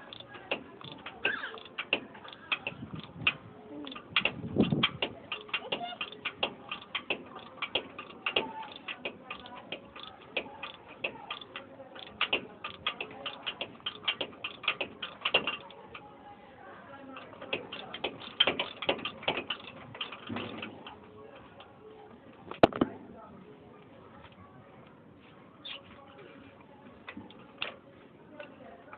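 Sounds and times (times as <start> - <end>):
hand tools clicking on metal: 0.0 - 16.1, 17.1 - 21.7.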